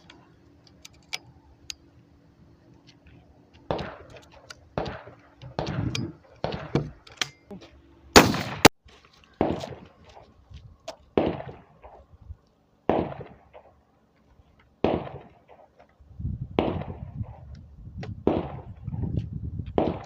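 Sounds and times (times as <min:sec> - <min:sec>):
shotgun shots echoing: 0:03.7 - 0:04.2, 0:04.8 - 0:06.7, 0:08.2 - 0:08.7, 0:11.2 - 0:12.0, 0:12.9 - 0:13.8, 0:14.8 - 0:15.7, 0:16.6 - 0:17.4, 0:18.3 - 0:18.7.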